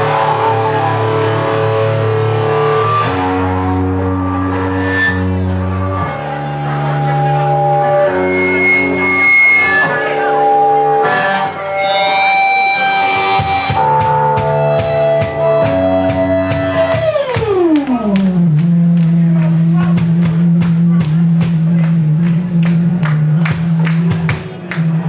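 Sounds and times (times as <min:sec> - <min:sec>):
guitar chords: 0:00.0 - 0:25.0
drum hits: 0:13.4 - 0:24.7.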